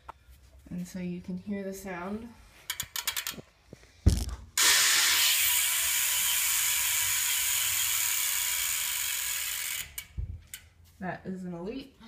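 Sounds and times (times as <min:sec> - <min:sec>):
bicycle hub ratcheting buzz: 0:02.7 - 0:03.4, 0:04.6 - 0:10.6.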